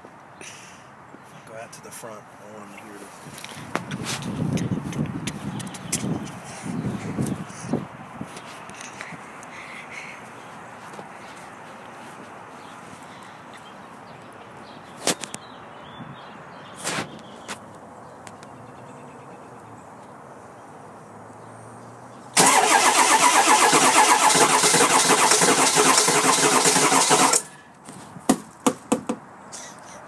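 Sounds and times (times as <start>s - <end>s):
diesel engine cranking: 22.4s - 27.6s.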